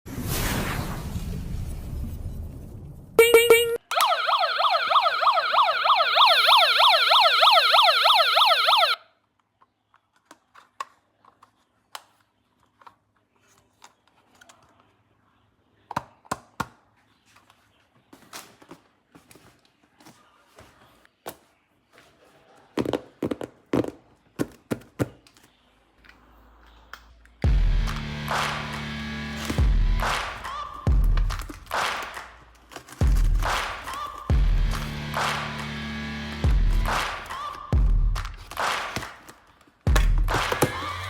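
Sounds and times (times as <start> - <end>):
electronic yelp siren: 3.2 - 9.0.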